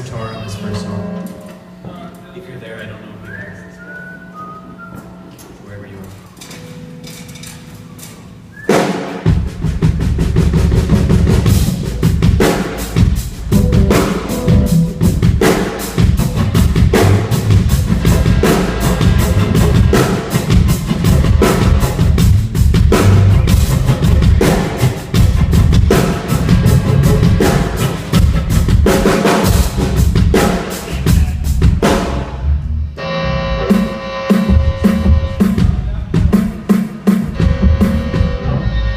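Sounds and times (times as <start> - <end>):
live band playing loudly: 6.3 - 38.9
drum kit with bass drum and snare: 8.6 - 32.5, 33.6 - 38.8.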